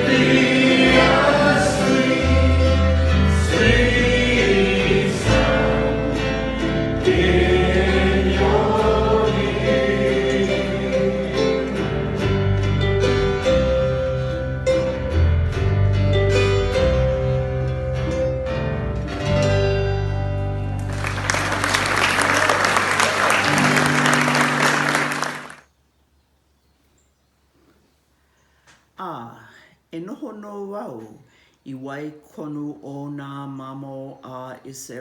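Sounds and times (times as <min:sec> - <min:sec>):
choir singing: 0:00.0 - 0:13.8
plucked guitar: 0:00.0 - 0:22.4, 0:23.3 - 0:25.5.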